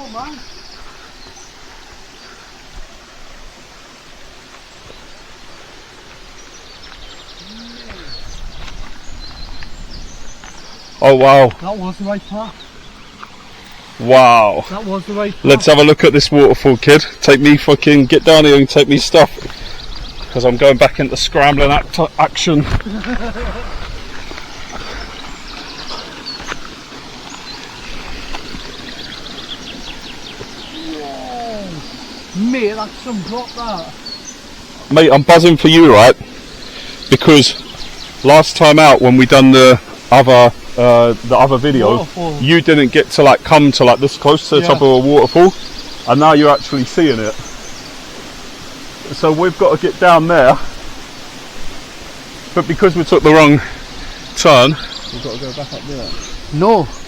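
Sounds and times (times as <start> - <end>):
small birds chirping: 0.0 - 57.0
waterfall rushing: 0.0 - 57.0
wind buffeting microphone: 6.0 - 13.6, 18.0 - 33.7.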